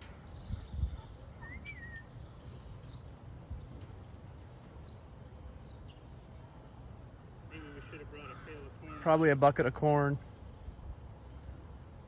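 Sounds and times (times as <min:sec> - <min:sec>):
bird chirp: 0:00.0 - 0:04.1, 0:04.7 - 0:06.4.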